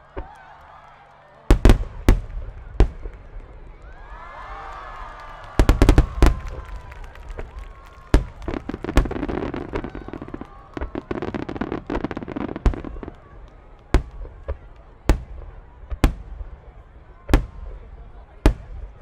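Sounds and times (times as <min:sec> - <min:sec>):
firework bangs and crackling: 0:00.0 - 0:19.0.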